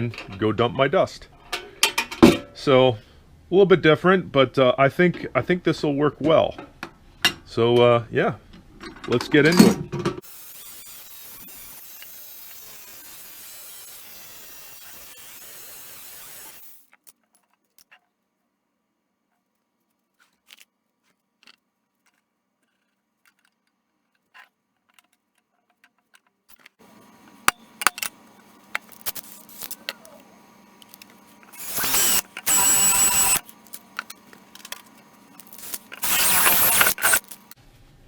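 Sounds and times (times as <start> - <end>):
power drill whining: 10.2 - 16.9, 26.8 - 37.6
tool handling clicks: 20.2 - 37.6.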